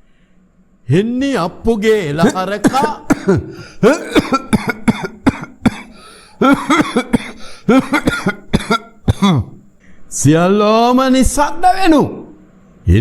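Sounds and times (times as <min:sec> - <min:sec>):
person coughing: 0:02.2 - 0:09.6.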